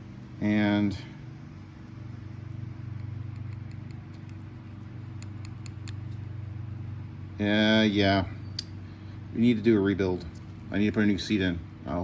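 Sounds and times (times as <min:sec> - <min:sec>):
steady low hum: 0:00.0 - 0:12.0
small ticks and clicks of parts: 0:02.9 - 0:06.3.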